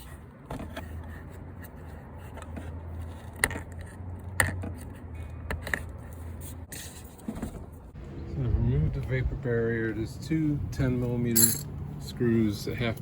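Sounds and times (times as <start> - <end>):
low steady hum: 7.8 - 13.0.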